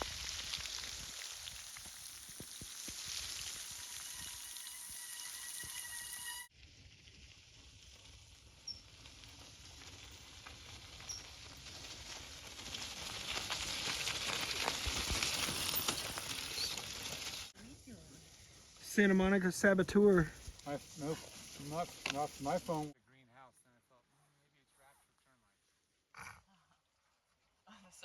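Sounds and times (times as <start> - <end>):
hail and rain pattering: 0.0 - 4.2, 11.6 - 17.5, 18.9 - 22.9.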